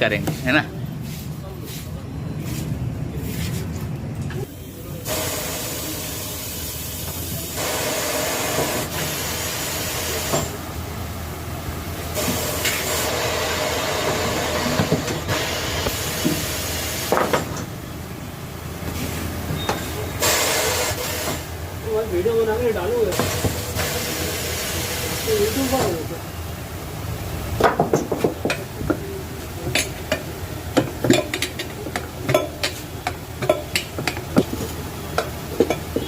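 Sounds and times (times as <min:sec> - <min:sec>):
air hissing: 0:04.9 - 0:10.6, 0:12.1 - 0:17.6, 0:19.8 - 0:21.6, 0:23.1 - 0:26.0.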